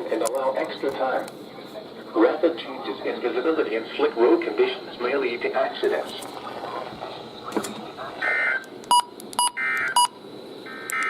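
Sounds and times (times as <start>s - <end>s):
warbling data tones: 4.6s - 11.0s
sharp electronic beeps: 8.2s - 11.0s.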